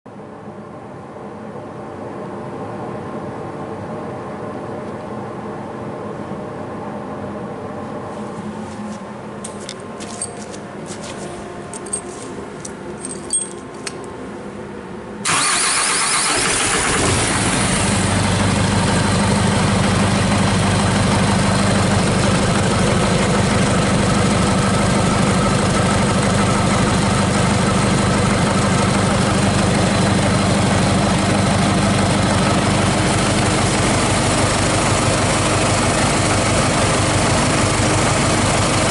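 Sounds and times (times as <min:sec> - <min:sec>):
diesel engine cranking and idling: 0:15.2 - 0:38.9.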